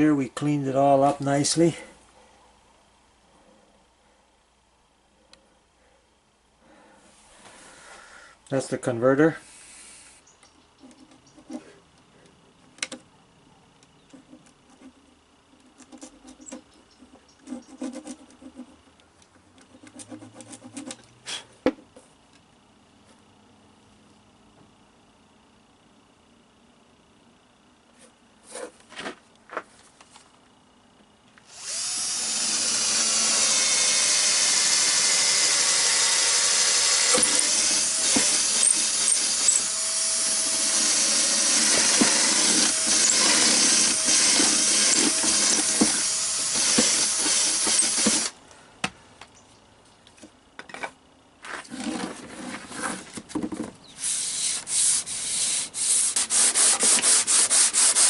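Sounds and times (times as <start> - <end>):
power drill running: 31.4 - 48.4
rubbing sanding strokes: 54.0 - 58.0.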